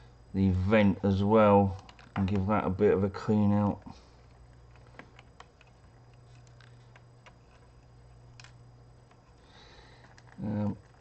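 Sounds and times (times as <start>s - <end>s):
low steady hum: 0.0s - 11.0s
small parts clicking: 1.7s - 2.4s, 3.6s - 11.0s.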